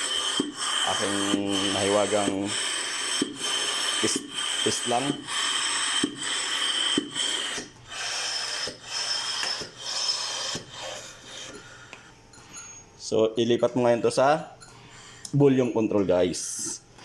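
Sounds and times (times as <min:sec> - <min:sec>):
thin high whistle: 0:00.0 - 0:11.1
compressed gas hissing: 0:00.0 - 0:12.0.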